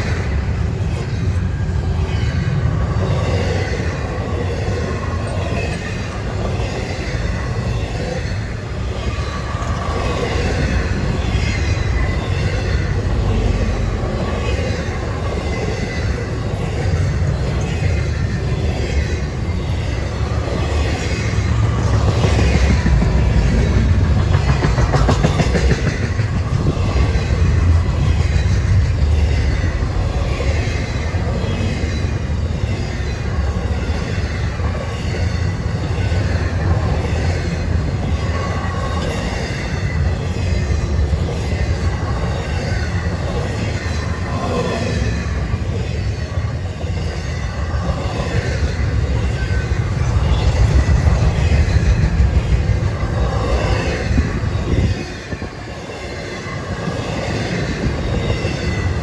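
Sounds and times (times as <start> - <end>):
train rumbling on rails: 0.0 - 59.0.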